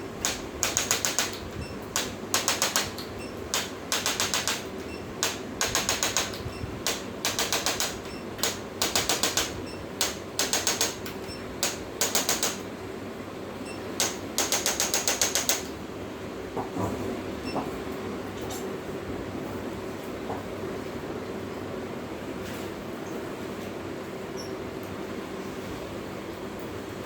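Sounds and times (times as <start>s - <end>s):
sharp rapid clicks: 0.2s - 12.6s, 14.0s - 15.7s.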